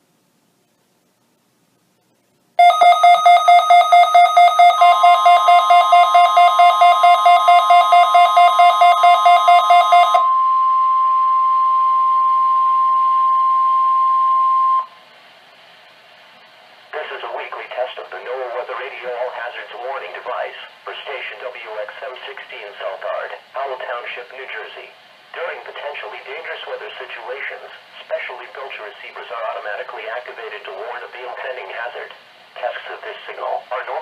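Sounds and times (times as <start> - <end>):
electronic alarm beeping: 2.6 - 15.0
steady warning alarm tone: 2.6 - 15.0.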